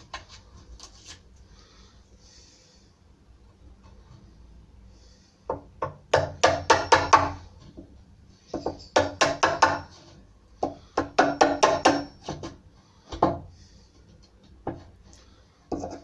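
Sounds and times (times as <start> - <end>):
hammer tapping on chisel: 5.5 - 7.4, 8.5 - 9.9, 10.6 - 13.5.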